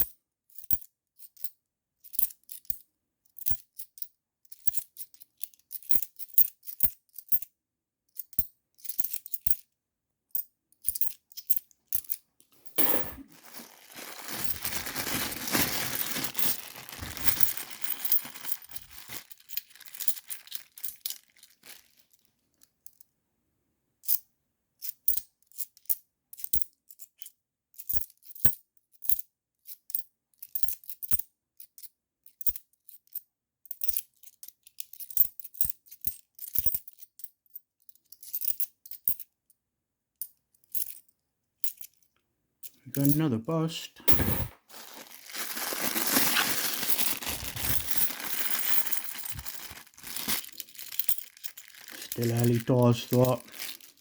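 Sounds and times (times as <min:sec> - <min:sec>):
coins rattling and rustling: 0:10.9 - 0:22.1, 0:44.1 - 0:54.0
coins clicking and clinking: 0:11.0 - 0:13.3, 0:15.8 - 0:21.2, 0:44.1 - 0:44.6, 0:46.3 - 0:49.6, 0:50.4 - 0:53.5.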